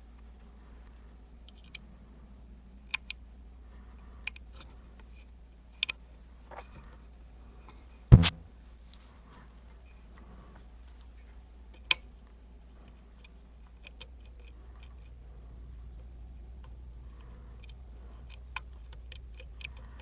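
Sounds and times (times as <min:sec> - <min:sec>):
double knock: 0:08.1 - 0:08.4.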